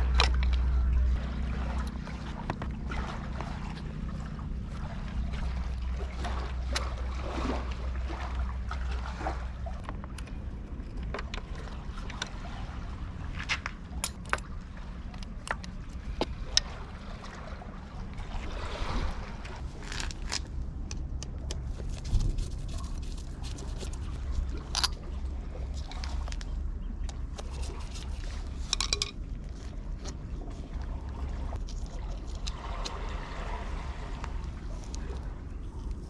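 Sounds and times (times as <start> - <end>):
boat engine humming: 0.0 - 36.0
handling clicks and knocks: 9.8 - 12.3, 13.4 - 14.5, 27.1 - 30.2.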